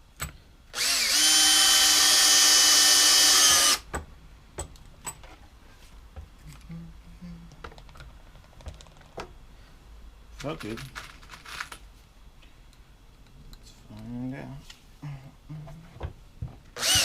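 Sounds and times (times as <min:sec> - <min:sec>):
power drill driving screw into wood: 0:00.7 - 0:03.9, 0:16.8 - 0:17.0.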